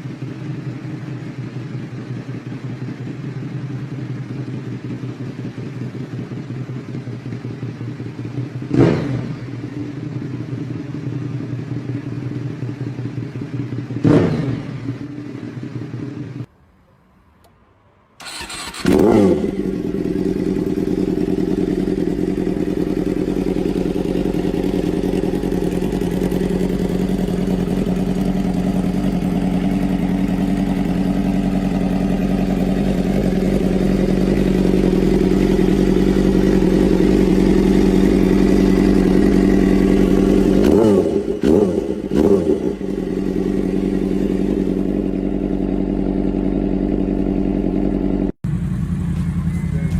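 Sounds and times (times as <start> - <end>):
motorcycle engine idling and revving: 0.0 - 16.5, 18.2 - 49.9.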